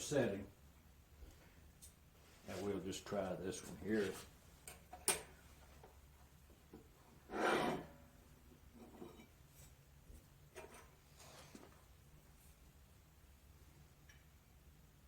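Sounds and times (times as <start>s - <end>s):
steel square scraping steel: 7.3s - 8.0s.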